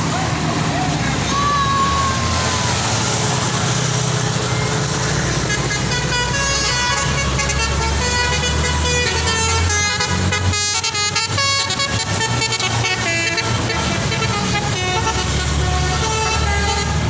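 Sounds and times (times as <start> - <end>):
bus engine running: 0.0 - 17.0
bus horn playing a tune: 4.6 - 17.0.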